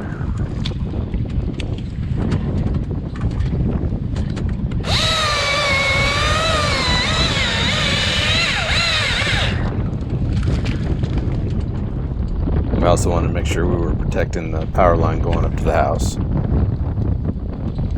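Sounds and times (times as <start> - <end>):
wind noise on microphone: 0.0 - 17.9
chainsaw cutting a branch: 4.8 - 9.8.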